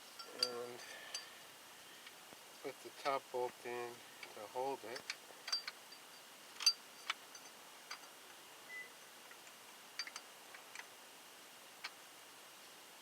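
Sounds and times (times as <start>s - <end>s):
metal parts clinking: 4.9s - 8.1s.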